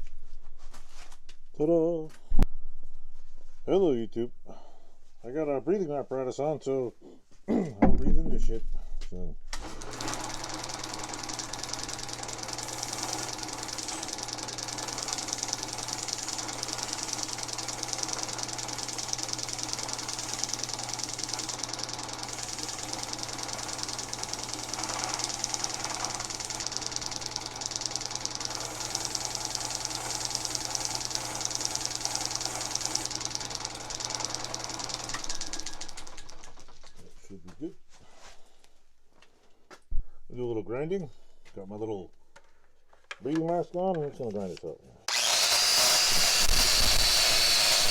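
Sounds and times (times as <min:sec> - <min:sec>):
wire wheel grinder scrubbing metal: 0:09.6 - 0:36.6, 0:45.1 - 0:47.9.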